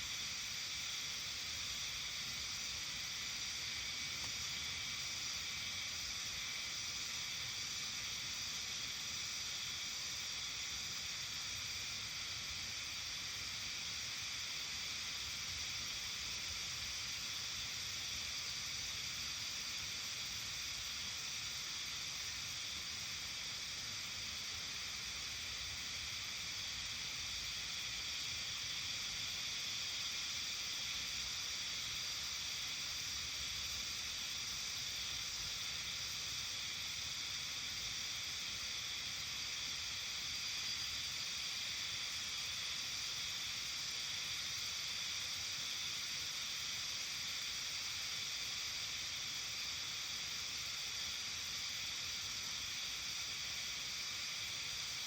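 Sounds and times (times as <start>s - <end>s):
high-pitched hiss-like chorus: 0.0s - 55.0s.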